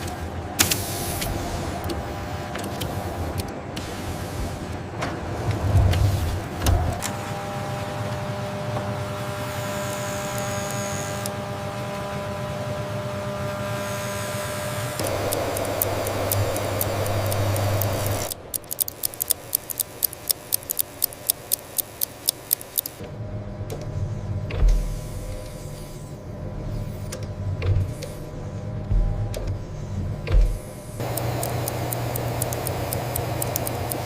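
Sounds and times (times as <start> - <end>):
machine hum with held tones: 7.0 - 34.0
sharp evenly spaced clicks: 15.0 - 23.0, 31.0 - 34.0.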